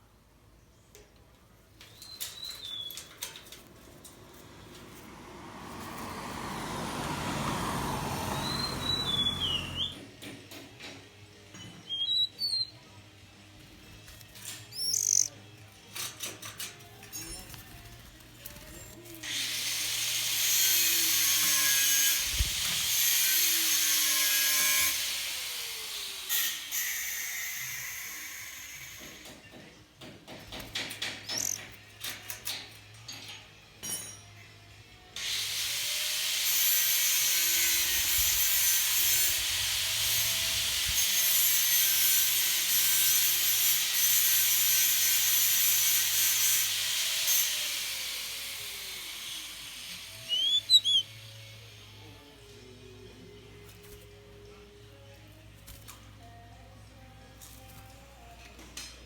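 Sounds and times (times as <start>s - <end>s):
sharp knocks and clatter: 10.0s - 11.8s, 29.0s - 34.3s
power tool grinding: 13.9s - 15.4s, 18.8s - 27.6s, 31.2s - 31.7s, 35.2s - 51.8s
short high chirp: 50.2s - 51.1s.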